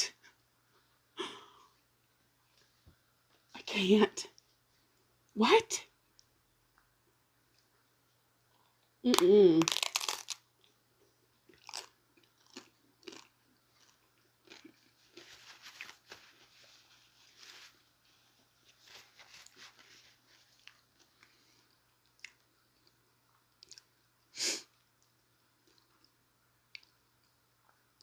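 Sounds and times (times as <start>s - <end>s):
chewing and crunching food: 9.6s - 16.6s, 19.3s - 28.0s.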